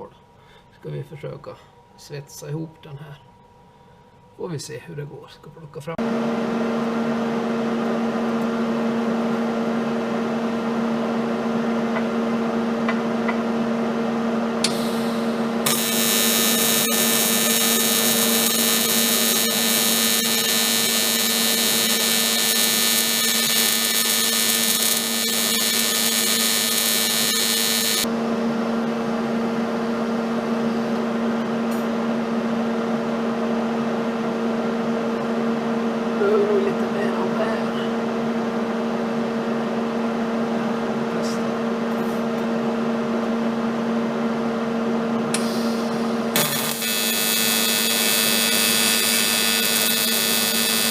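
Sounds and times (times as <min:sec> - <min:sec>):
welding machine humming: 0:06.0 - 0:32.1, 0:45.1 - 0:50.9
welding arc buzzing: 0:14.5 - 0:28.1, 0:45.2 - 0:50.9.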